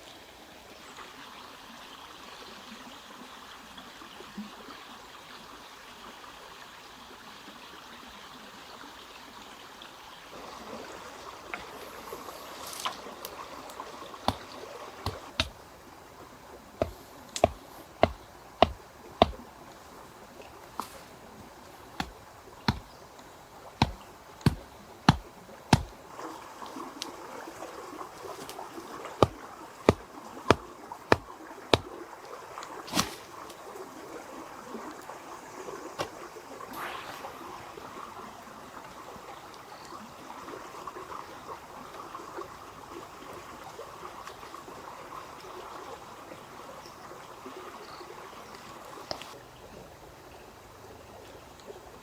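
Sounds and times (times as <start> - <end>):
trickling water: 0.0 - 52.0
sharp knocks: 15.0 - 15.6, 16.8 - 19.4, 22.0 - 22.9, 23.8 - 25.9, 29.2 - 31.9.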